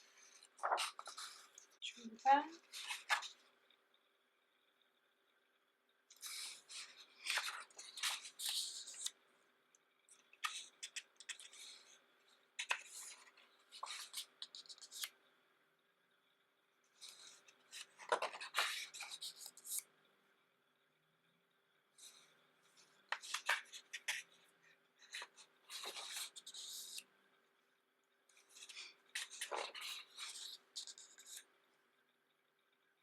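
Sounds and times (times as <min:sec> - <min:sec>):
paper pages rustling: 0:00.2 - 0:01.7, 0:02.6 - 0:03.4, 0:06.1 - 0:09.2, 0:10.2 - 0:12.0, 0:12.6 - 0:15.2, 0:17.0 - 0:19.8, 0:22.8 - 0:24.4, 0:25.0 - 0:27.0, 0:28.3 - 0:31.5.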